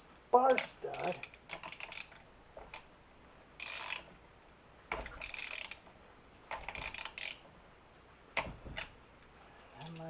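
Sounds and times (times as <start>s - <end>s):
metal tools clicking and rattling: 0.5s - 2.1s, 9.8s - 10.0s.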